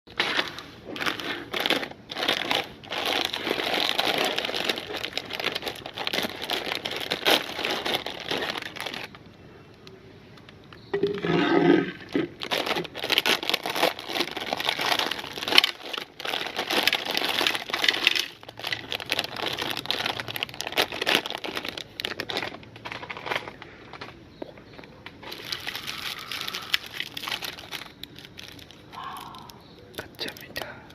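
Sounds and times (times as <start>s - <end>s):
plastic wrappers crinkling: 0.1s - 10.9s, 12.0s - 24.2s, 25.2s - 30.8s.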